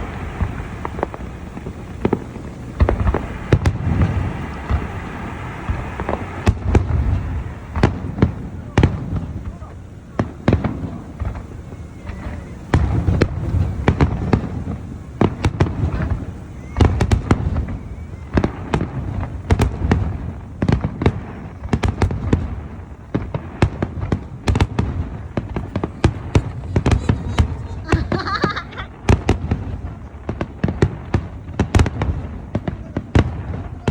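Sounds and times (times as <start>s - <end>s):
deep rumbling booms: 0.0s - 33.9s
fireworks bangs and crackles: 0.0s - 33.9s.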